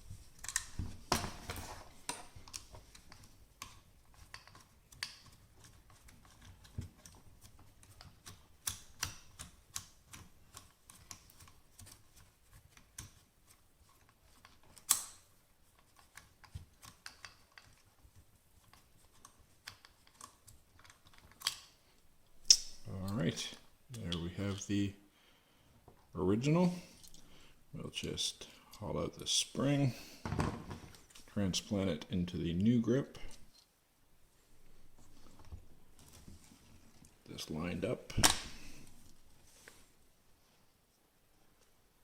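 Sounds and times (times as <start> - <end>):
small clicks and taps of hard parts: 2.0 - 12.0, 13.9 - 17.9.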